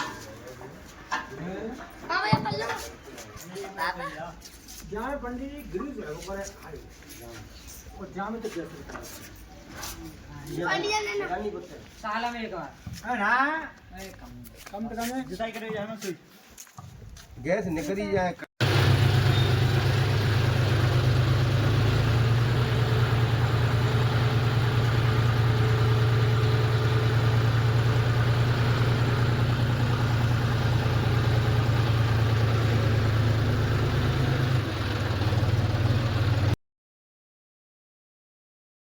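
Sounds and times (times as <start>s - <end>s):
engine idling: 18.6s - 36.6s.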